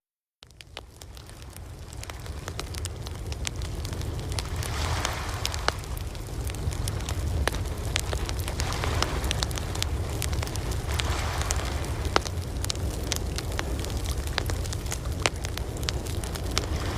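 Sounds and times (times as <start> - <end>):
campfire crackling: 0.4 - 16.9
steady low rumble: 1.0 - 16.9
ocean surf: 4.3 - 13.1, 15.9 - 16.9.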